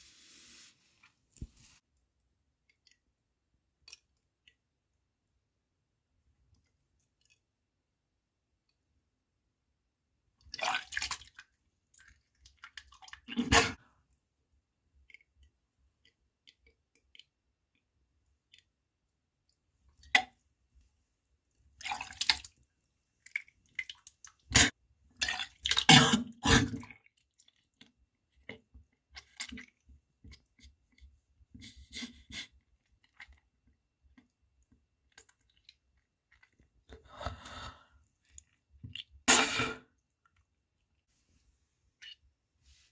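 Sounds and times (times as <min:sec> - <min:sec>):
splashing and dripping into water: 0:10.4 - 0:13.4, 0:21.8 - 0:26.0, 0:26.7 - 0:30.6
person retching and gagging: 0:13.1 - 0:13.8, 0:24.4 - 0:27.1, 0:38.8 - 0:40.1.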